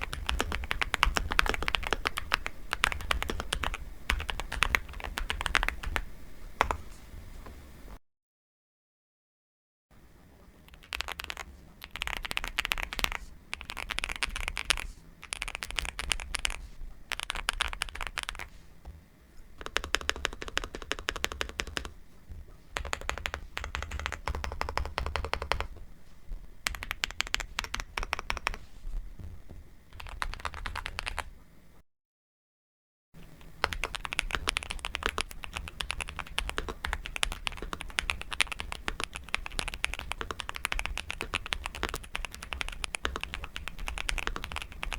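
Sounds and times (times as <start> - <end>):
fast typing on mechanical keyboard: 0.0 - 6.8, 10.7 - 18.5, 19.6 - 22.0, 22.8 - 25.8, 26.6 - 28.6, 30.0 - 31.3, 33.2 - 44.9.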